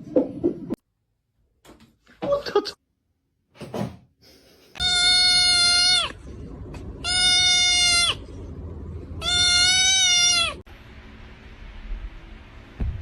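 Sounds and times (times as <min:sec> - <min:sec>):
animal high cries: 0:04.8 - 0:06.2, 0:07.0 - 0:08.2, 0:09.2 - 0:10.6.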